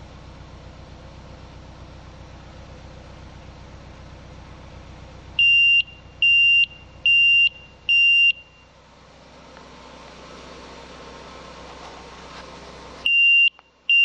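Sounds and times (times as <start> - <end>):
high-pitched alarm beeps: 5.4 - 8.7, 13.1 - 14.0.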